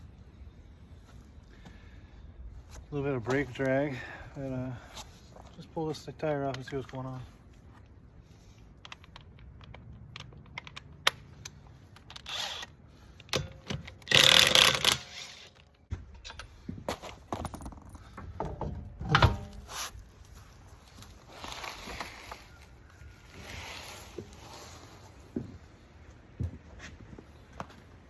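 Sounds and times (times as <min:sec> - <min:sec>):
metal tools clinking and rattling: 0:13.4 - 0:19.6.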